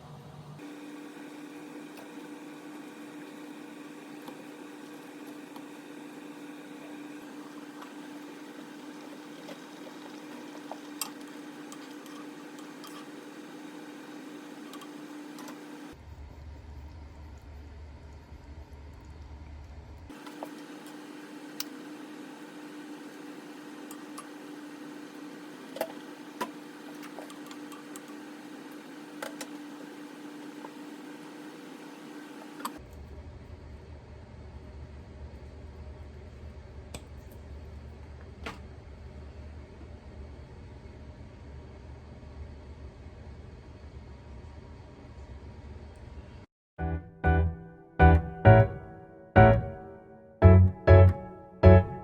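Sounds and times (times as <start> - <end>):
steady hum: 46.8 - 52.0.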